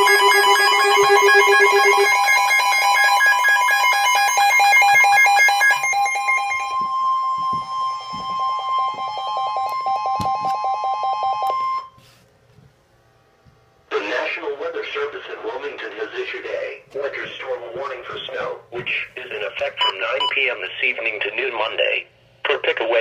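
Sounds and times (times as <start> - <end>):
rapidly pulsing electronic beeps: 0.0 - 6.8
steady alarm tone: 0.0 - 12.0.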